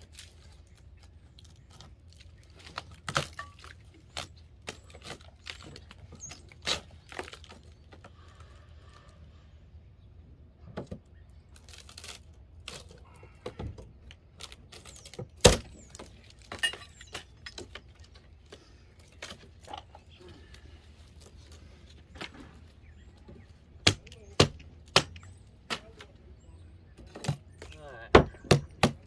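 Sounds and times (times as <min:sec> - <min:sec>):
loose wood and nails clattering: 0:14.7 - 0:20.1
hand tools clattering: 0:16.5 - 0:17.8.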